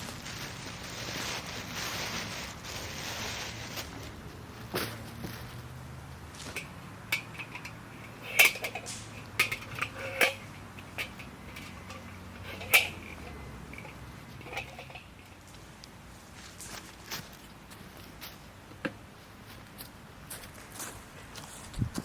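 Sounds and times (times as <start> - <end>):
metal clinking and tapping: 6.4 - 15.5.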